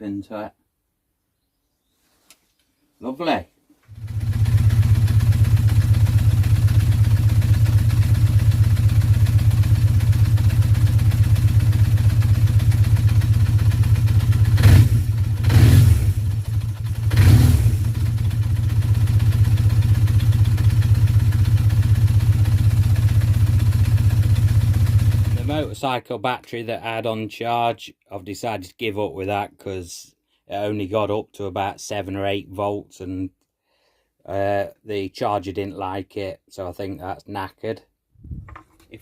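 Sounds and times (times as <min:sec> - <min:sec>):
motorcycle engine idling and revving: 0:03.9 - 0:25.7.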